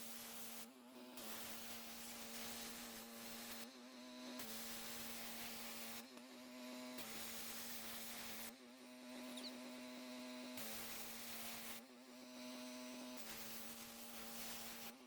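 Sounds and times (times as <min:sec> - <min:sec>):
pressure washer engine running: 0:01.2 - 0:11.8.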